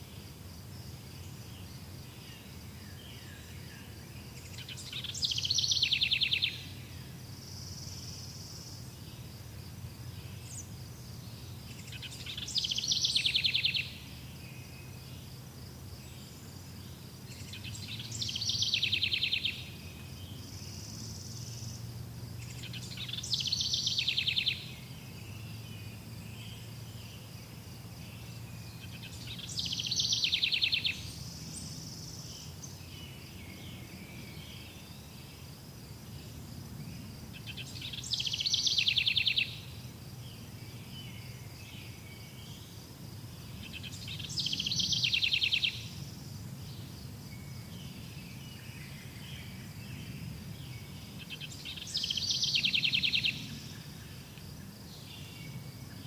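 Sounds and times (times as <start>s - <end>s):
insects chirring: 0.0s - 56.0s.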